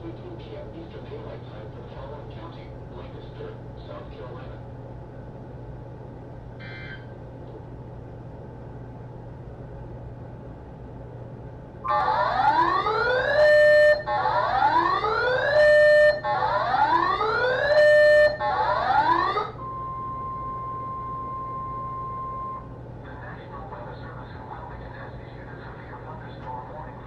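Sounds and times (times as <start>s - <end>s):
radio static with low hum: 6.6s - 7.2s, 23.0s - 27.0s
steady single-pitch alarm tone: 11.8s - 22.8s.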